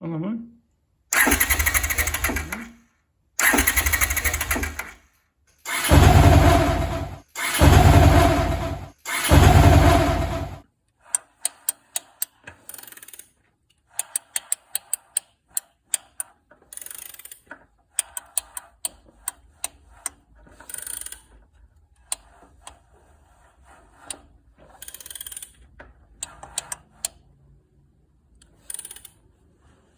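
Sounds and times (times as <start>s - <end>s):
motorcycle engine running loudly: 5.7s - 10.6s.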